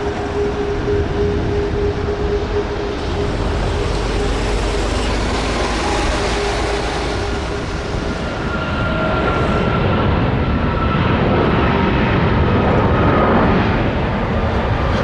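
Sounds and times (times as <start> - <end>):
higher engine tone: 0.0 - 11.2
jet engines roaring: 0.0 - 15.0.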